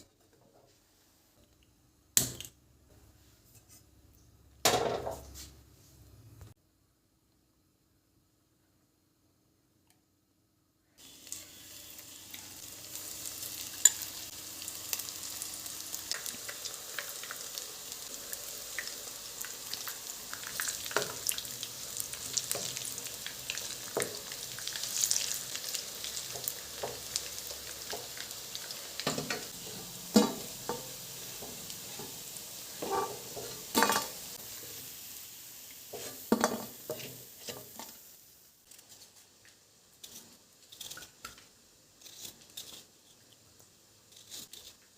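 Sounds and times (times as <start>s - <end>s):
food sizzling in a hot pan: 11.0s - 41.9s
spatula scraping a pan: 29.0s - 34.2s, 35.9s - 38.0s.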